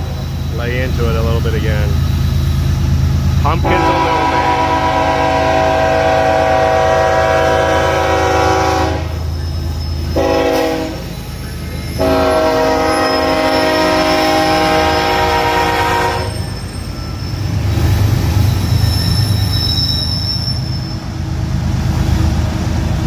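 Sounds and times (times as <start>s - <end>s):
locomotive engine rumbling: 0.0s - 23.0s
locomotive air horn blasts: 3.6s - 9.3s, 10.1s - 11.1s, 12.0s - 16.5s.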